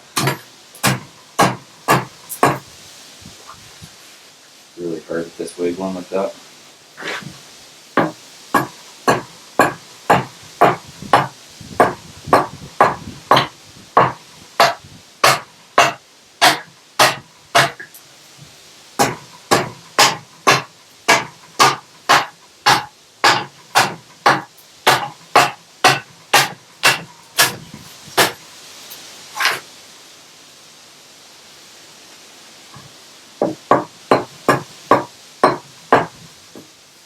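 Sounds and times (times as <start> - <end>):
axe chopping wooden log: 0.2 - 2.6, 8.0 - 17.9, 19.0 - 27.6, 28.2 - 28.4.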